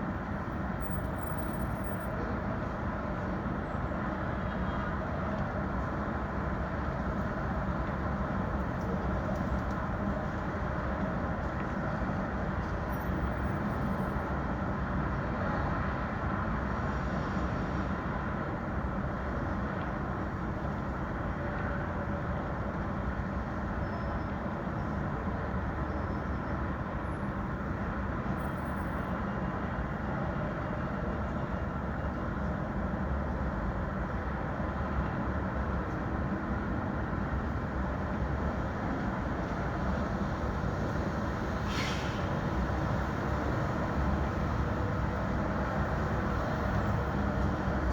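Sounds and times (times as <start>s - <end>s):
low rumble of traffic: 0.0s - 47.9s.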